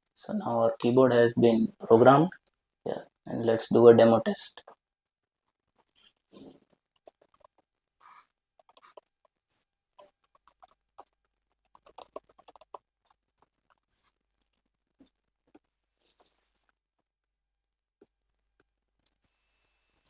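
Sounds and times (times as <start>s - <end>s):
mechanical keyboard keys clicking: 11.7s - 12.8s.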